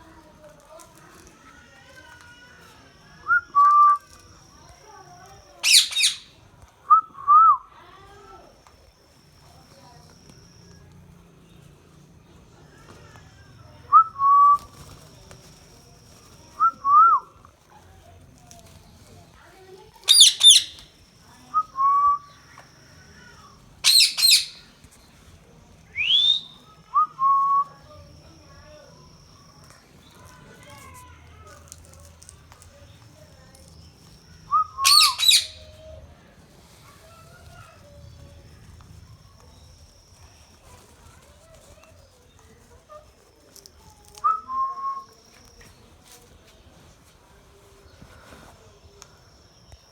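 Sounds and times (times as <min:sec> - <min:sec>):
parrot squawks: 0:05.6 - 0:06.3, 0:20.1 - 0:20.8, 0:23.8 - 0:24.7, 0:34.8 - 0:35.7
parrot whistling phrases: 0:05.6 - 0:07.7, 0:20.0 - 0:20.8, 0:23.8 - 0:24.7, 0:25.9 - 0:27.9, 0:34.5 - 0:35.8
parrot harsh double shriek: 0:34.8 - 0:35.6.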